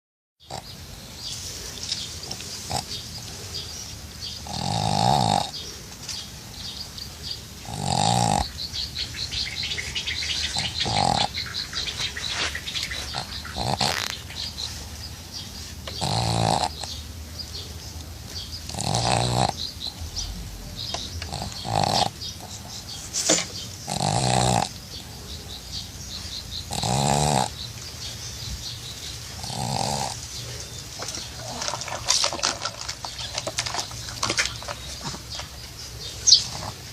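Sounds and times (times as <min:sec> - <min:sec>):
dog snoring: 0:02.2 - 0:03.7, 0:04.3 - 0:05.7, 0:07.6 - 0:08.6, 0:10.4 - 0:12.1, 0:12.9 - 0:14.6, 0:15.8 - 0:17.0, 0:18.6 - 0:22.9, 0:23.8 - 0:25.1, 0:26.7 - 0:27.6, 0:29.4 - 0:30.2.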